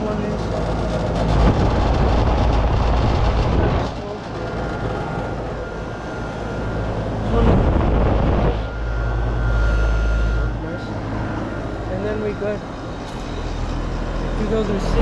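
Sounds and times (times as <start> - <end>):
compressor hum: 0.0 - 15.0
condenser fans rushing: 0.0 - 15.0.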